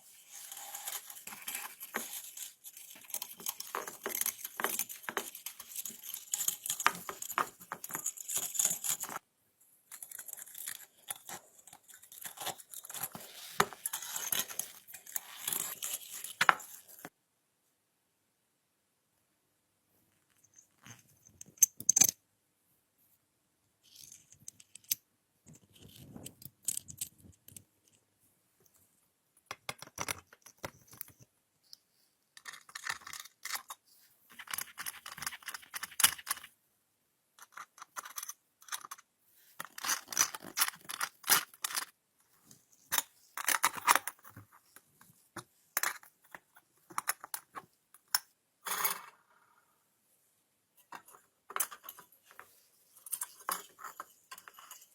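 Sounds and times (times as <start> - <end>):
small metal parts clinking: 0.3 - 9.2, 21.4 - 22.1, 39.6 - 41.9.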